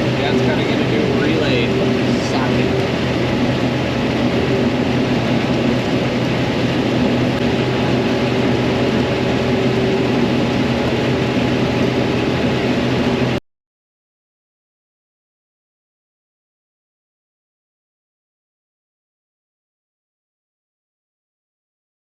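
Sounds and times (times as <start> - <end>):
farm machinery engine running: 0.0 - 13.4.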